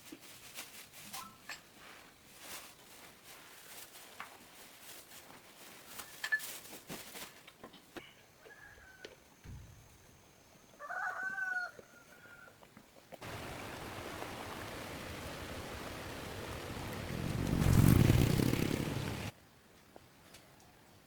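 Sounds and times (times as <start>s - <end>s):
rooster crowing: 10.8s - 12.5s
steady rushing noise: 13.2s - 19.3s.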